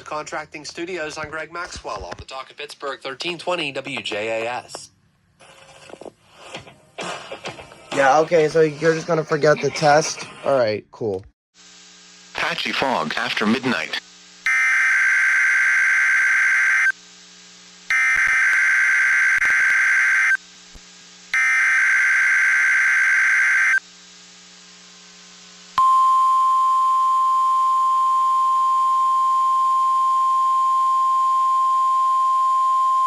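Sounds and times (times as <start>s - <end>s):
steady warning alarm tone: 14.5s - 16.9s, 21.4s - 23.8s.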